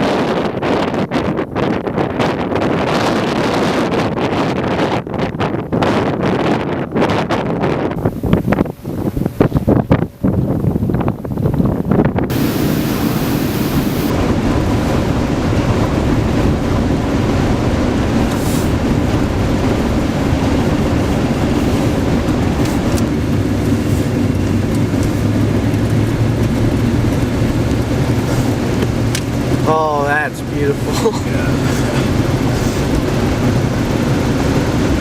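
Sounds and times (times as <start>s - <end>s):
road and rushing noise: 12.3s - 35.0s
vehicle engine hum: 12.3s - 35.0s.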